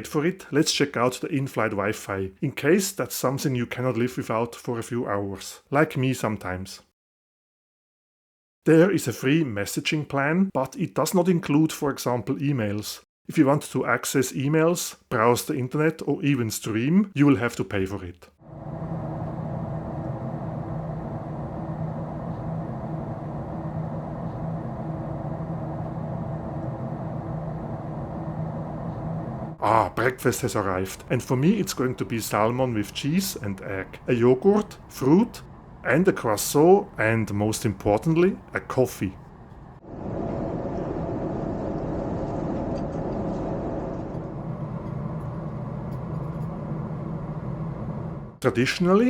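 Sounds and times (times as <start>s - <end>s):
airplane cabin drone: 18.4s - 48.5s.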